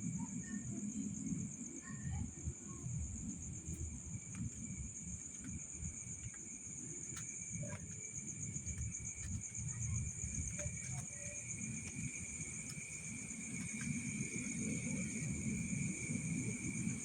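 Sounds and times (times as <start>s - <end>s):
high-pitched insect trill: 0.0s - 17.0s
lower insect trill: 0.0s - 17.0s
faint clicks: 8.6s - 15.7s.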